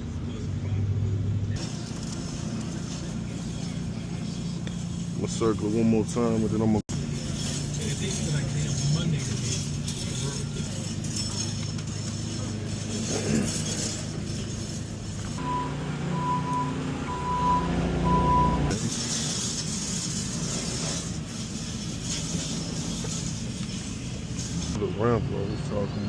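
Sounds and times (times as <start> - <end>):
truck engine running: 0.0 - 26.0
back-up alarm beeping: 15.4 - 18.8.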